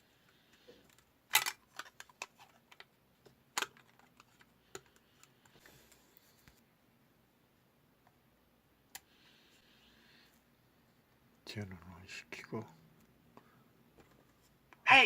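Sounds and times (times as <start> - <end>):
plastic device clicking: 0.9 - 2.9.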